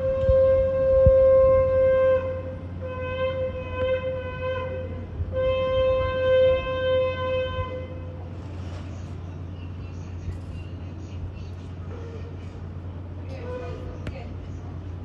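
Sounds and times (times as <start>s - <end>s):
shofar notes: 0.0s - 8.0s.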